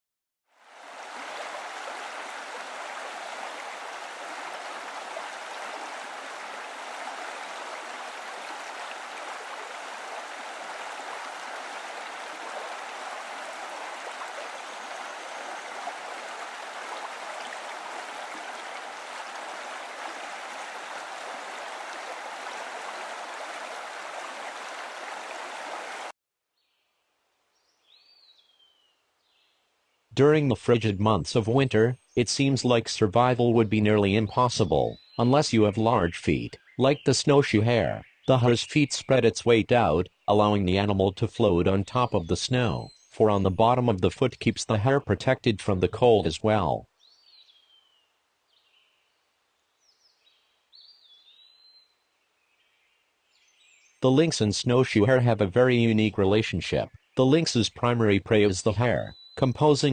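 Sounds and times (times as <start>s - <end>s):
running water rushing: 0.6s - 26.1s.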